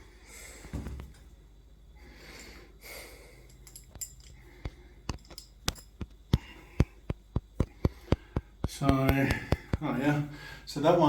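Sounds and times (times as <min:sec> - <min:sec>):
hand tools clicking on metal: 0:03.4 - 0:09.8.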